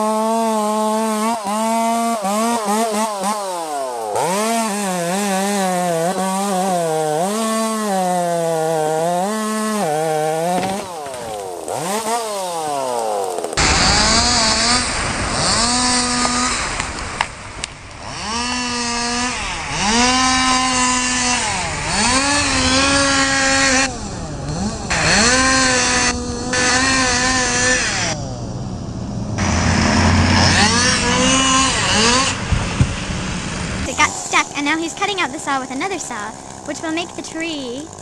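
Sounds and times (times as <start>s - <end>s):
chainsaw revving while cutting wood: 0.0s - 28.5s, 29.4s - 38.0s
lower steady engine: 16.2s - 38.0s.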